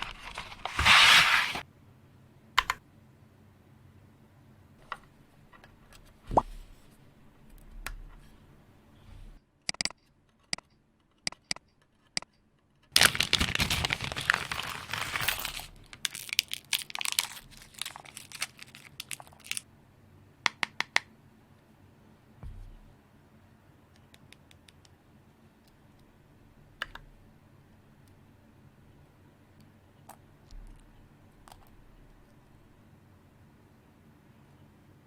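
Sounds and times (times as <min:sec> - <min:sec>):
plastic packaging crinkling: 0:13.0 - 0:19.6.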